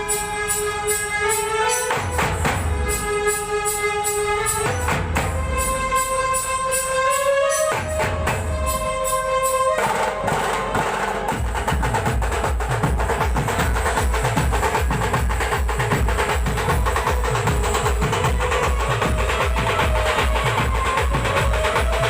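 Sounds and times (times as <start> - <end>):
fast drumming with bass drum: 0.0 - 3.3, 9.7 - 22.0.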